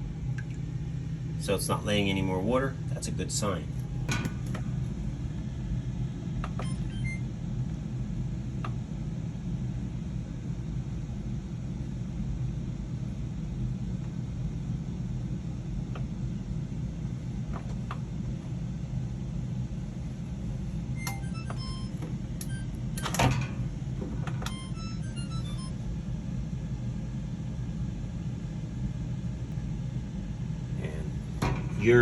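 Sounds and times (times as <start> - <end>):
washer drain pump humming: 0.0 - 8.8, 29.3 - 32.0.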